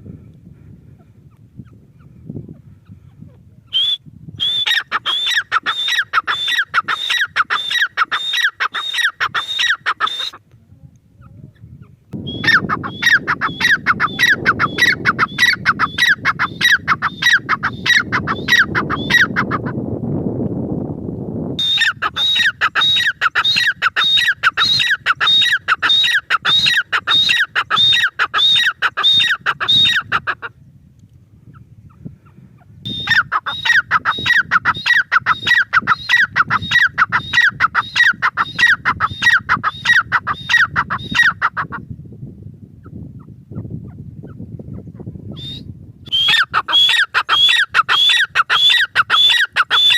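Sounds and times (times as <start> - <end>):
bird calling sharp repeated notes: 3.7 - 10.4, 12.2 - 19.7, 21.6 - 30.5, 32.9 - 41.8, 45.4 - 49.9.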